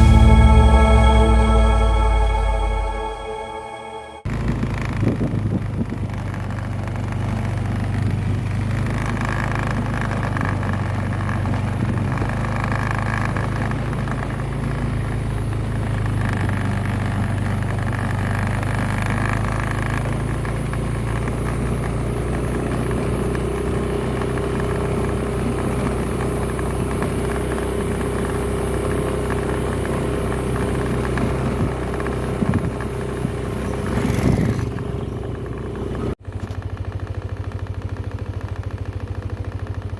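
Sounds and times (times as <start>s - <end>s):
steady high whine: 0.0s - 5.0s
vehicle engine running: 0.0s - 39.9s.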